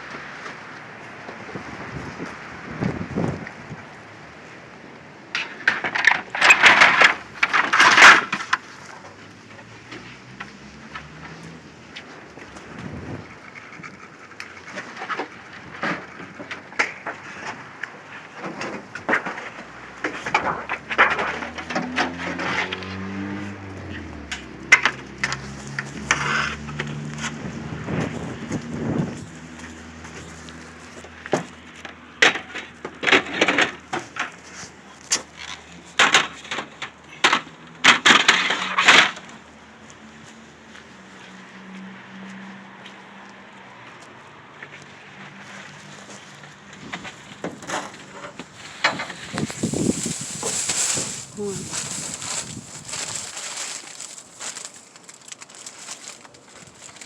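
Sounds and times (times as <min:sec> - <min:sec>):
debris knocking and banging: 0:05.4 - 0:08.8
crinkly rustling: 0:05.8 - 0:09.4, 0:24.7 - 0:31.8, 0:45.2 - 0:57.0.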